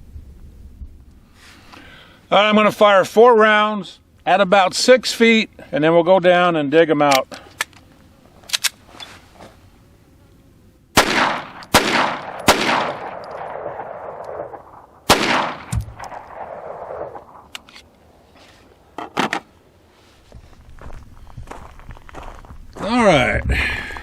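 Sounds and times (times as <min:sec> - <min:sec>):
pistol shots with echo: 0:11.0 - 0:17.5.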